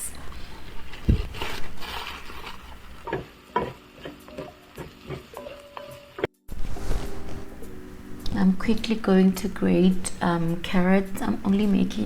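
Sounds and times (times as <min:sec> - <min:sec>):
spoon scraping and knocking pan: 0:01.0 - 0:06.3
vegetables sizzling in oil: 0:02.9 - 0:06.2.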